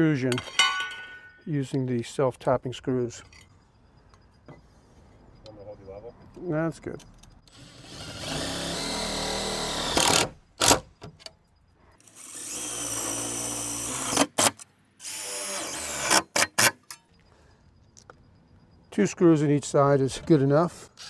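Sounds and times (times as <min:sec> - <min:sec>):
power drill driving screws: 0:07.5 - 0:10.9, 0:12.0 - 0:16.8.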